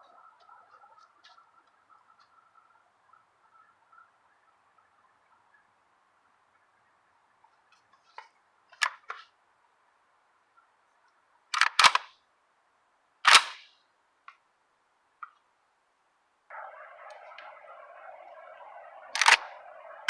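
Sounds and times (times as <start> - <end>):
gunshots: 16.5 - 20.0.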